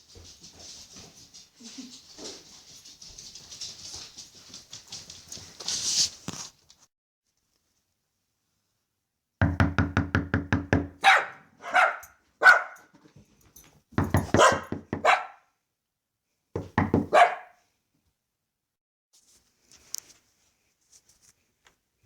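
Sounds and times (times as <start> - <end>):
rapid knocks on a door: 9.4 - 11.0, 14.0 - 15.1, 16.6 - 17.2
dog barking: 11.0 - 12.9, 14.2 - 15.5, 17.0 - 17.6.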